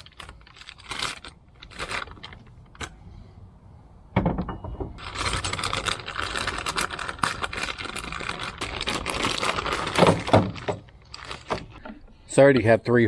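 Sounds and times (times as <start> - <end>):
small clicks and rustling: 0.0 - 2.9.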